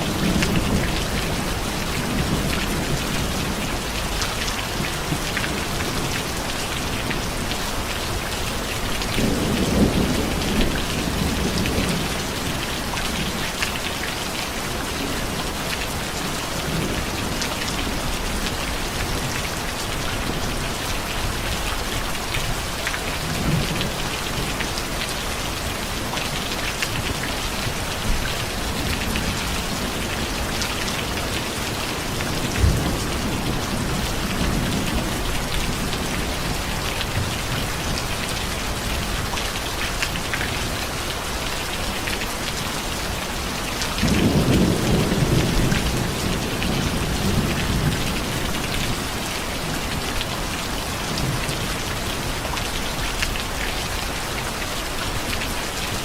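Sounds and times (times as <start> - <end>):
heavy rain pattering: 0.0 - 56.0
low rumble of thunder: 8.1 - 13.6, 27.0 - 39.4, 44.0 - 52.1.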